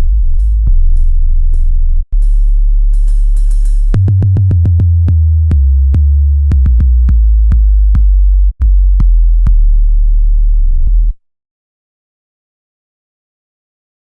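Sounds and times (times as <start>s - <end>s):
drum machine hits: 0.0s - 8.0s
deep electronic bass: 0.0s - 11.2s.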